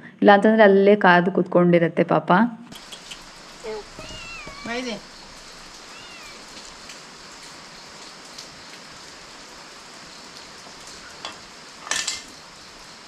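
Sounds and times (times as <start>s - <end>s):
steady rain falling: 2.7s - 13.0s
knock: 3.9s - 4.7s.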